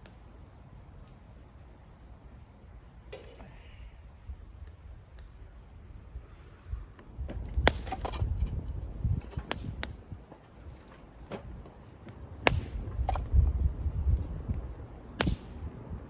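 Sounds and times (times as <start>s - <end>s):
axe chopping wood: 7.3s - 8.3s, 12.4s - 13.4s, 15.2s - 15.7s.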